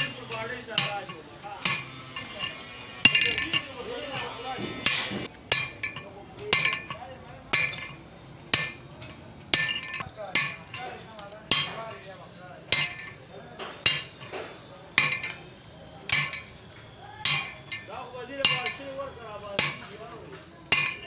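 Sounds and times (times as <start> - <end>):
hammer striking metal: 0.0 - 12.1, 12.7 - 15.4, 16.1 - 21.0.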